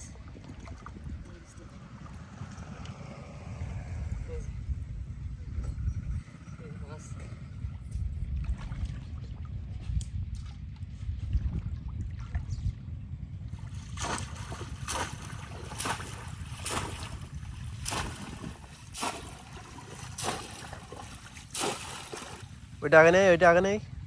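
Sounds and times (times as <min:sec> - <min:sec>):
steady low rumble: 0:00.0 - 0:24.0
splashes in shallow water: 0:08.2 - 0:12.7, 0:13.5 - 0:22.8.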